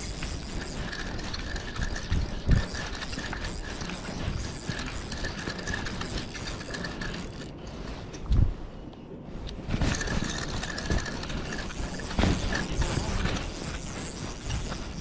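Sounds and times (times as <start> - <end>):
fishing reel whirring and clicking: 0.0 - 7.6, 9.8 - 15.0.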